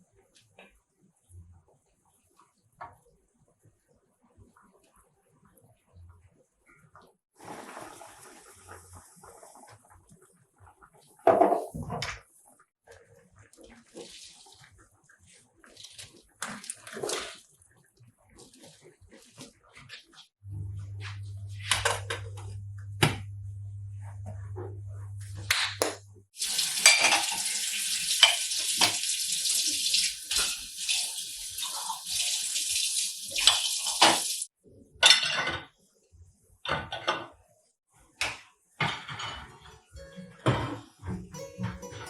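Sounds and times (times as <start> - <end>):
dishes and cutlery clattering: 11.3 - 12.1, 26.7 - 27.6, 28.2 - 29.0, 35.0 - 35.8, 36.7 - 37.4, 38.8 - 42.0
low steady hum: 20.5 - 26.2
tap running into a sink: 25.8 - 34.4.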